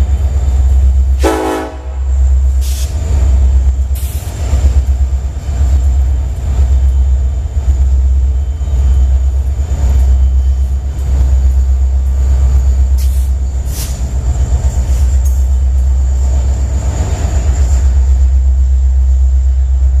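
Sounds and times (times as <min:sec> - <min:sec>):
train cars rumbling on rails: 0:00.0 - 0:20.0
train clanks: 0:00.0 - 0:20.0.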